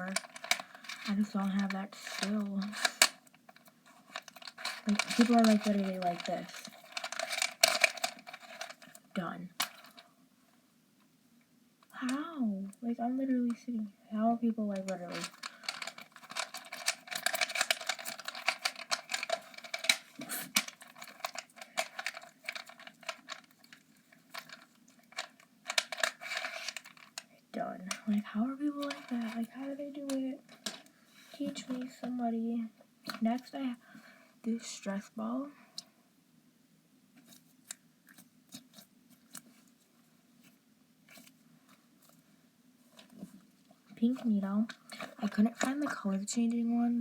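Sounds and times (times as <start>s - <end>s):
rubbery stress ball squeezed: 15.1s - 22.1s.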